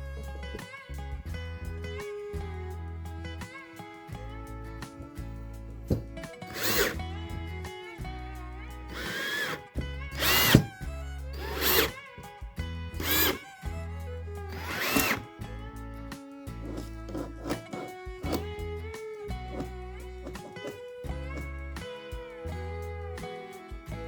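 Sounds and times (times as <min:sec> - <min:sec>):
guitar music: 0:00.0 - 0:24.0
power tool whining: 0:05.8 - 0:07.4, 0:08.6 - 0:12.0, 0:12.9 - 0:24.0.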